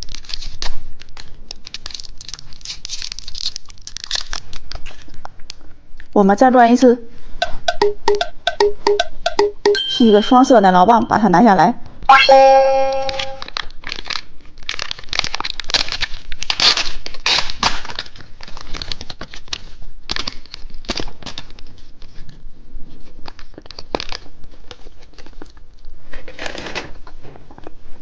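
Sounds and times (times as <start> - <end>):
plastic wrapper crinkling and tearing: 0.0 - 6.1, 13.0 - 22.4, 23.1 - 26.7.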